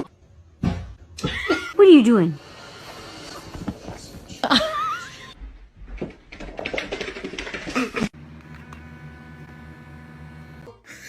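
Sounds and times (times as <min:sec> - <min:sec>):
rapid clicks and taps: 0:06.3 - 0:08.0.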